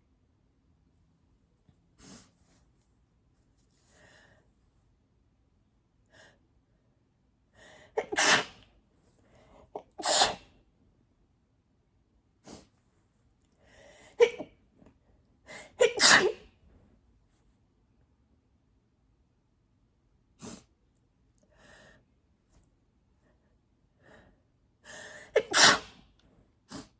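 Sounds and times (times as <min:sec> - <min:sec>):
woman sneezing: 0:08.0 - 0:08.6, 0:09.8 - 0:10.4, 0:14.2 - 0:14.5, 0:15.6 - 0:16.5, 0:25.3 - 0:26.0.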